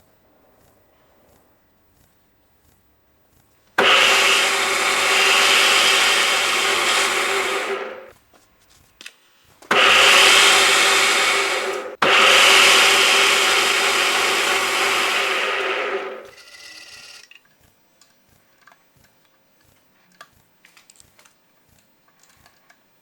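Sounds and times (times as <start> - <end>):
power tool motor running: 3.8 - 8.1, 9.7 - 17.3.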